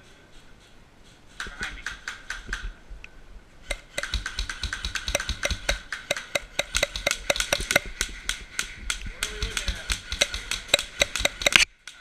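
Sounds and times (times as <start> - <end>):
airsoft guns firing: 1.4 - 2.6, 3.7 - 11.7.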